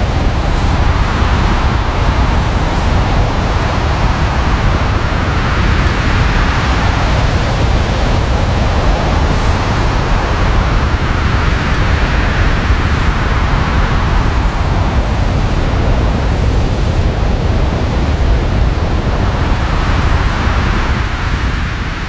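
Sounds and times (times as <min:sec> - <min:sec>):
rushing wind: 0:00.0 - 0:22.0.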